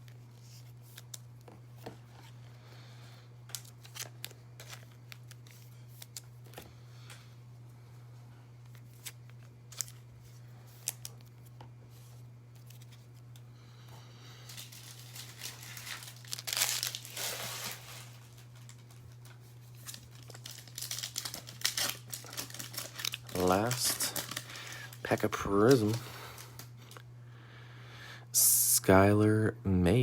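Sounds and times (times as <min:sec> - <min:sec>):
plastic wrapper tearing and crinkling: 0:08.9 - 0:10.0, 0:14.4 - 0:27.0.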